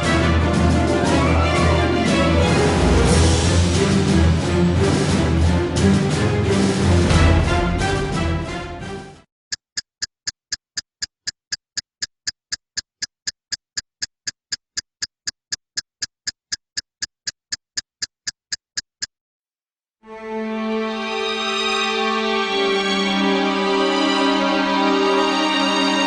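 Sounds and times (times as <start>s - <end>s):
background music: 0.0s - 9.3s, 20.0s - 26.0s
clock ticking: 9.5s - 19.2s.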